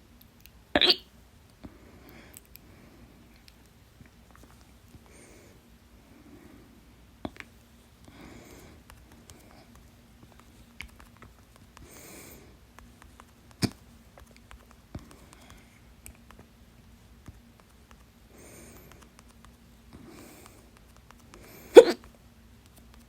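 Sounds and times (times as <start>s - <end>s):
person hiccuping: 0.8s - 1.0s, 21.7s - 22.0s
slow breaths: 7.9s - 9.7s, 11.8s - 12.6s.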